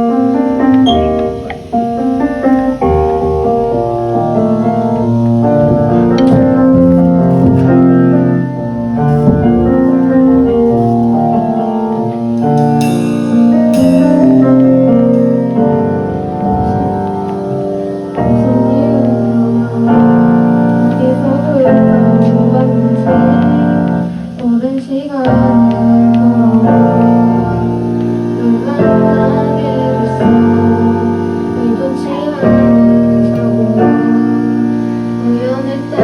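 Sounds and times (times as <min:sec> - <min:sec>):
electric piano playing chords: 0:00.0 - 0:36.0
bright cymbal swells: 0:09.0 - 0:36.0.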